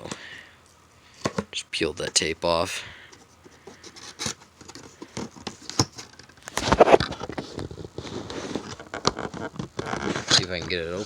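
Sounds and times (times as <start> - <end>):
cardboard box scraping and rustling: 9.4 - 11.0.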